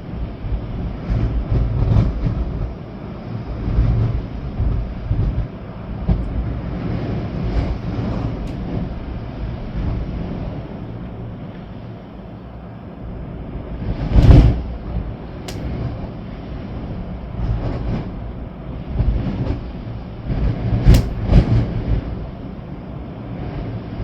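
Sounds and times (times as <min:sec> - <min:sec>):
wind buffeting microphone: 0:13.6 - 0:23.8.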